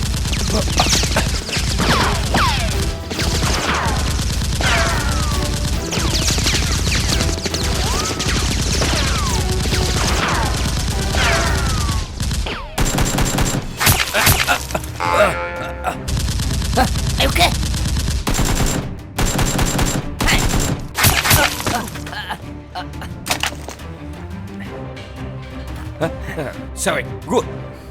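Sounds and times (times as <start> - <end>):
rapid automatic gunfire: 0.0 - 14.0, 16.2 - 20.8
separate loud gunshots: 0.0 - 14.7, 16.1 - 21.7
falling ricochet whistles: 0.4 - 10.6.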